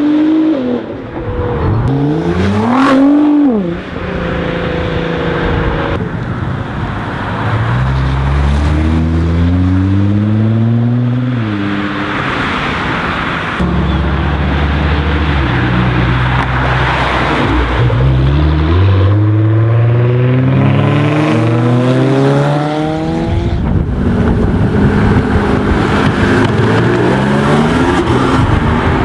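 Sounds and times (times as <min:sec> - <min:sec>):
car engine accelerating hard: 0:13.6 - 0:29.0.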